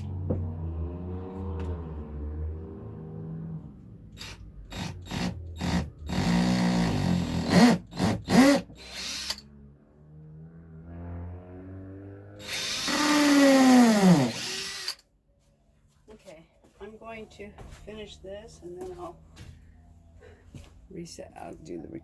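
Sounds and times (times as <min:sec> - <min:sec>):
power drill boring into wood: 0:04.2 - 0:09.5, 0:12.4 - 0:15.0.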